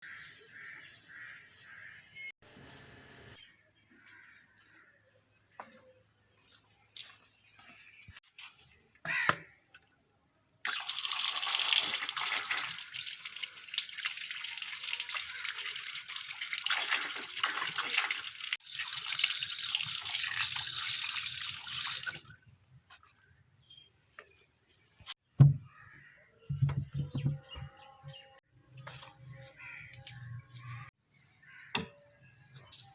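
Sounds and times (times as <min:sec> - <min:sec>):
water running and splashing: 0:10.7 - 0:23.2.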